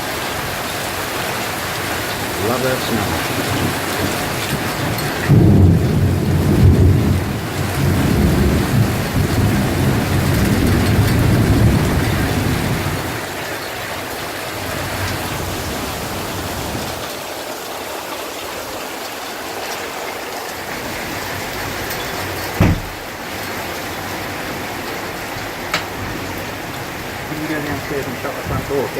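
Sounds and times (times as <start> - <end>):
heavy rain: 0.0 - 28.9
thunder rumbling: 2.0 - 13.4, 24.2 - 28.9
sharp thump: 22.6 - 23.0.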